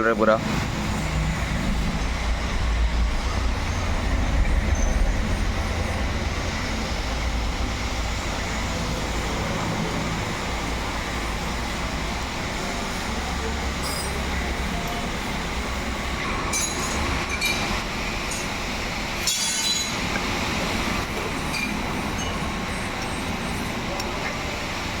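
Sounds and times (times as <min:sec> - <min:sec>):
low rumble: 0:00.7 - 0:11.9.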